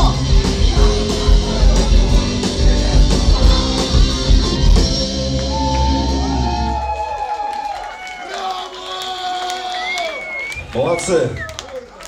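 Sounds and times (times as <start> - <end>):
drum kit hits: 0.0 - 5.4.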